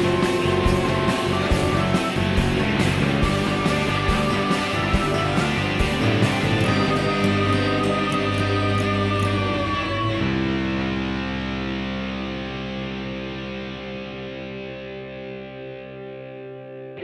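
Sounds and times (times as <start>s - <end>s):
guitar chord ringing: 0.0s - 17.0s.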